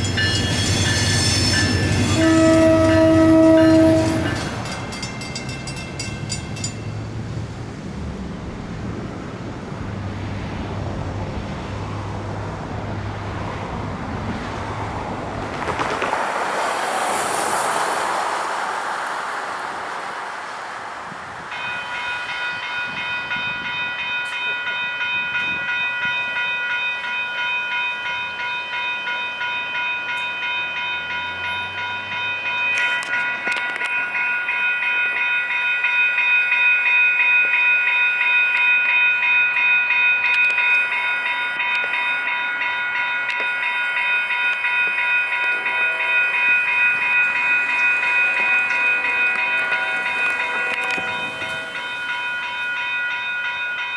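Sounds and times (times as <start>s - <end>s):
railroad crossing bell ringing: 0.0s - 7.5s, 21.2s - 53.9s
train rumbling past: 0.0s - 53.9s.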